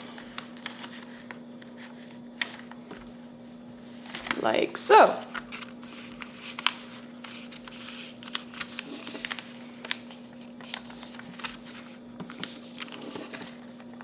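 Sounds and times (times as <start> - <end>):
faint steady hum: 0.0 - 14.0
paper crackling while folded: 0.0 - 14.0.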